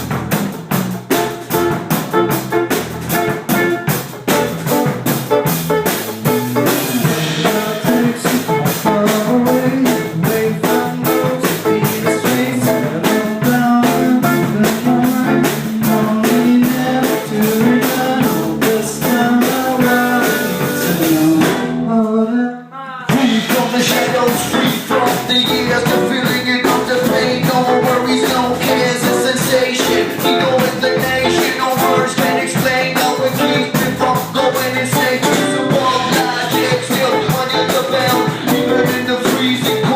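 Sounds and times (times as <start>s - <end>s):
rock band playing: 0.0s - 22.0s, 23.1s - 39.9s.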